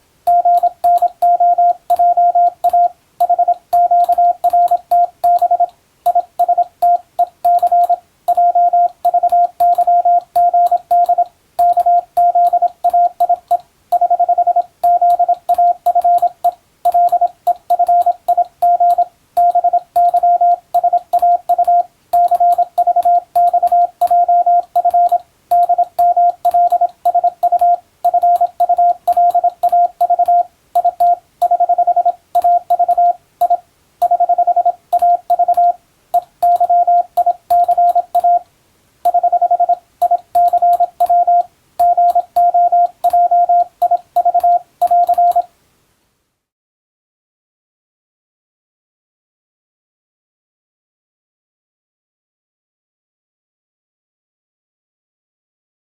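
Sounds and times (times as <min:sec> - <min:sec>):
morse code beeps: 0:00.3 - 0:38.4, 0:39.1 - 0:45.5.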